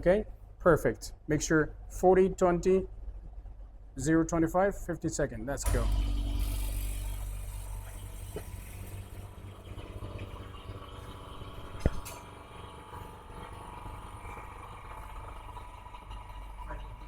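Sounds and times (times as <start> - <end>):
laminating machine humming: 5.6 - 17.0.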